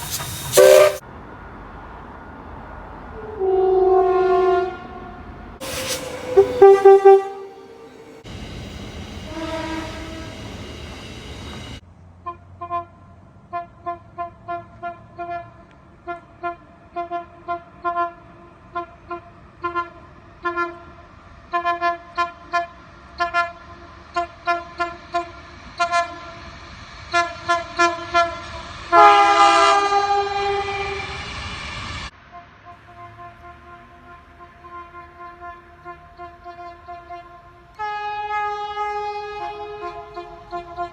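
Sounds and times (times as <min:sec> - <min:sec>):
train rumble: 0:00.0 - 0:12.0, 0:13.5 - 0:40.9
train horn toots: 0:00.5 - 0:01.0, 0:03.2 - 0:08.3, 0:09.2 - 0:10.6, 0:13.5 - 0:26.3, 0:27.1 - 0:31.2, 0:32.2 - 0:40.9.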